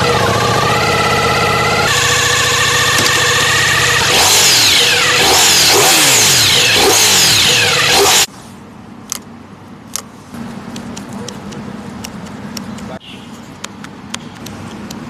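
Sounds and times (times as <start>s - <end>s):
motorcycle engine revving: 0.0s - 8.3s.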